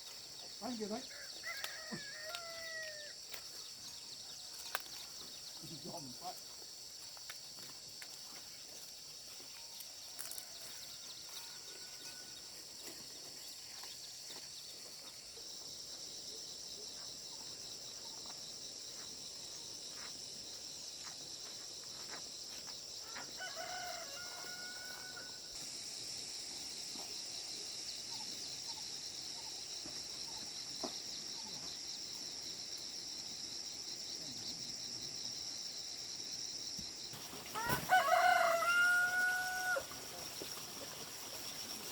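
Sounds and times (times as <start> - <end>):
rooster crowing: 1.0 - 3.2, 10.2 - 12.4, 23.0 - 25.5, 37.6 - 40.0.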